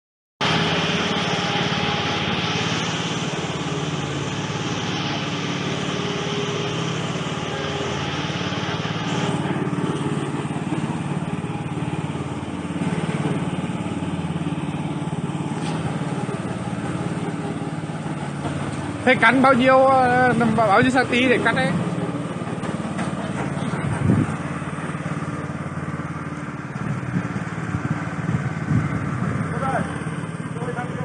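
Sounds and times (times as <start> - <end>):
high hissing: 0.4 - 22.4
lawn mower engine running: 0.4 - 31.0.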